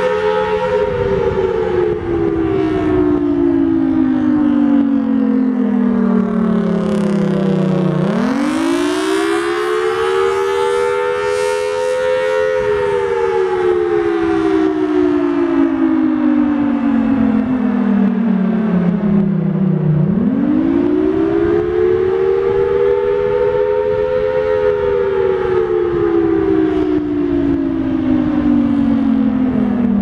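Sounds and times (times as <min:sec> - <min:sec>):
fire siren wailing: 0:00.0 - 0:30.0.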